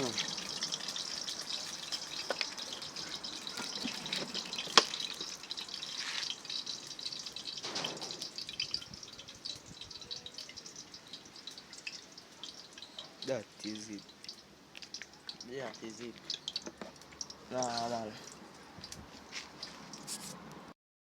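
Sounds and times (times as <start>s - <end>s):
dumplings sizzling in hot oil: 0.0s - 20.1s
oil pop: 3.6s - 5.4s.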